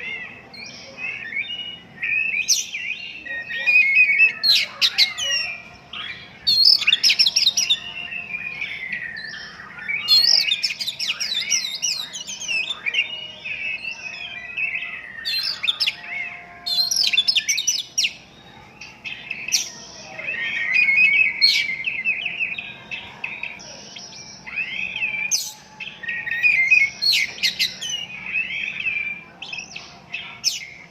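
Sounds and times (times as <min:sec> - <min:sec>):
bird singing varied phrases: 0:00.0 - 0:30.9.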